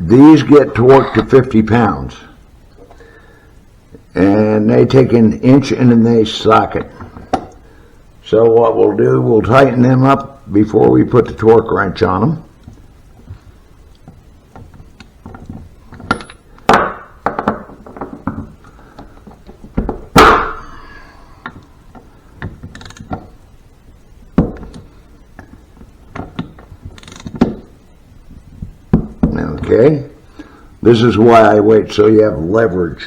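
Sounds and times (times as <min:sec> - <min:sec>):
wrench clicking and clanking: 0:27.0 - 0:27.4.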